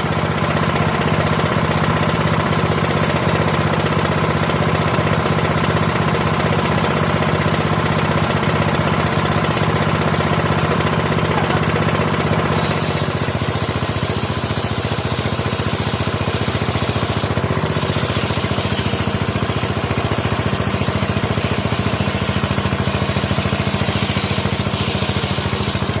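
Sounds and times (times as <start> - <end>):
sawmill machinery humming: 0.0 - 26.0
high hiss: 12.5 - 22.4.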